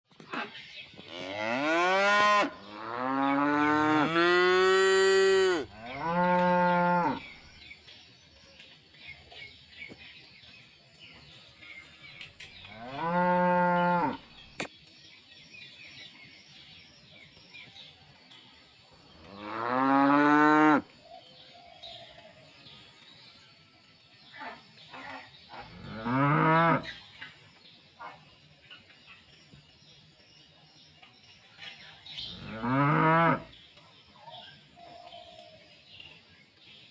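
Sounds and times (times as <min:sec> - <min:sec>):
cows mooing: 0:01.1 - 0:07.2, 0:19.3 - 0:20.8.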